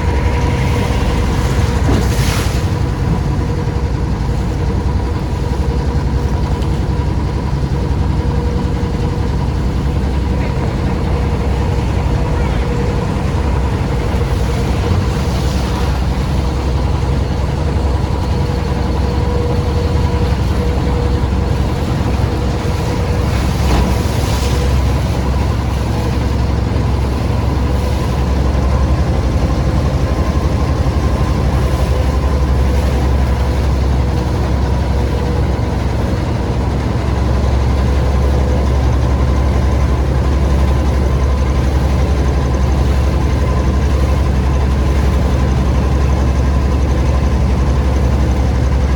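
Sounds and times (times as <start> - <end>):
engine running with low drone: 0.0 - 48.9.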